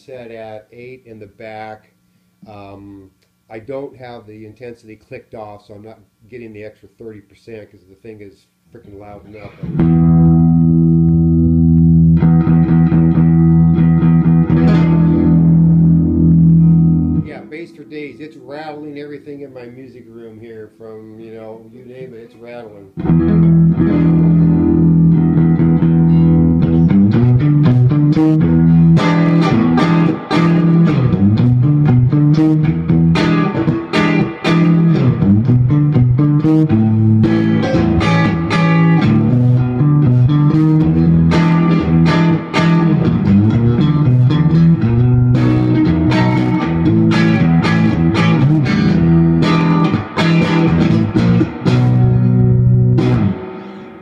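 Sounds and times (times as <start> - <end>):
distorted electric guitar notes: 9.3 - 19.2, 23.0 - 54.0.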